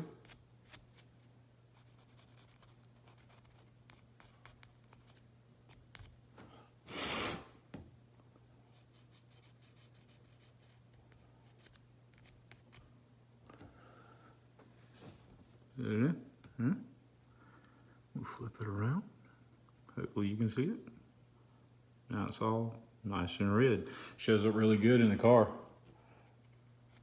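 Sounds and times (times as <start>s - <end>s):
marker scratching on plastic: 1.8s - 6.1s, 8.7s - 12.8s.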